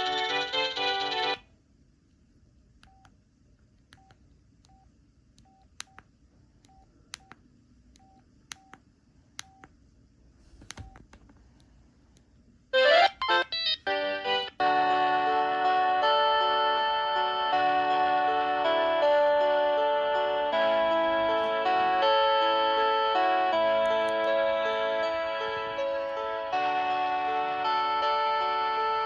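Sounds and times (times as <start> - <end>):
electronic ringtone: 0.0 - 1.4
phone button clicks: 10.6 - 11.2.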